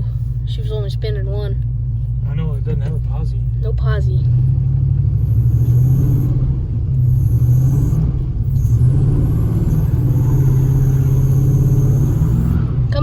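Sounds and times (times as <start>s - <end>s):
truck engine droning: 0.0s - 13.0s.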